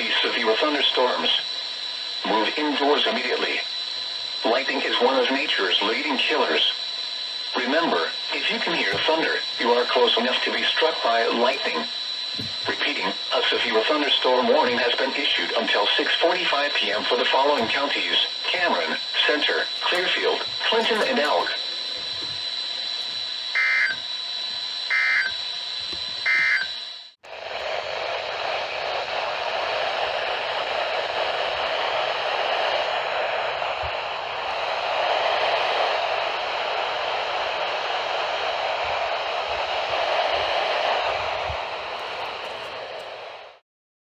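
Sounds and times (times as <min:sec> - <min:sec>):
radio static hiss: 0:00.0 - 0:43.6
warbling data bursts: 0:07.6 - 0:25.6, 0:26.2 - 0:27.1.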